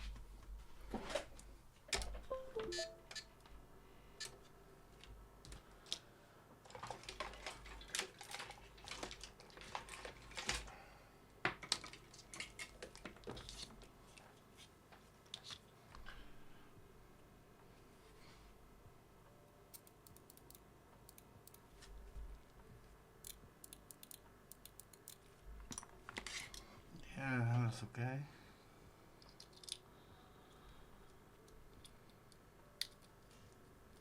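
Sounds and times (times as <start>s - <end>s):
small tools clicking and tapping: 23.2s - 26.7s.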